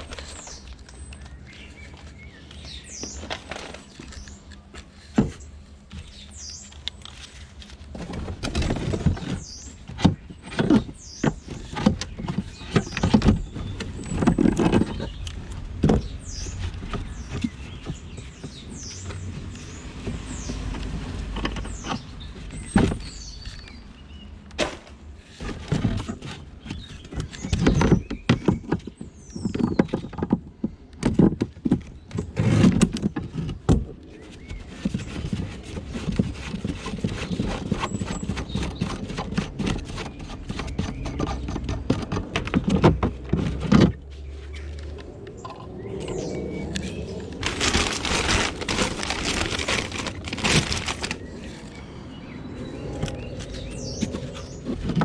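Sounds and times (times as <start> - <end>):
birds chirping: 0.0 - 55.0
hard objects knocking and clattering: 47.4 - 51.3.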